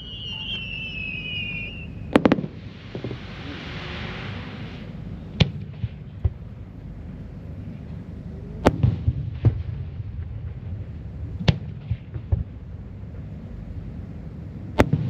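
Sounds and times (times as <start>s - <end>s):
firework whistle: 0.0s - 5.0s
firework hissing rush: 0.0s - 5.2s
firework bangs: 0.0s - 6.5s, 8.6s - 12.8s, 14.7s - 15.0s
small firework pops: 2.1s - 3.2s, 14.8s - 15.0s.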